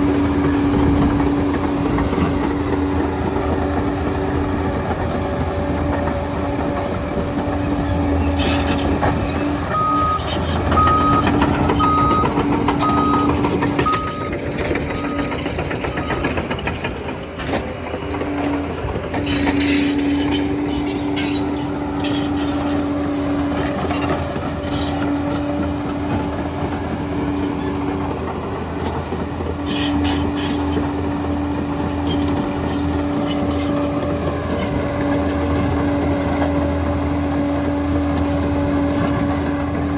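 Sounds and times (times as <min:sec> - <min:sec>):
bulldozer diesel engine droning: 0:00.0 - 0:39.9
clanks of tracks and blade: 0:05.8 - 0:36.7
reversing alarm beeping: 0:09.7 - 0:16.6.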